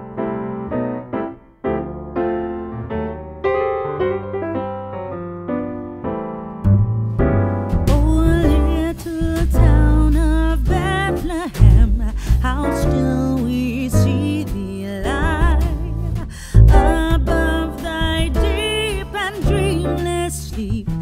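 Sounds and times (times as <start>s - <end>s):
electric piano chords: 0.0s - 20.4s
bass drums and lead melody: 6.7s - 21.0s.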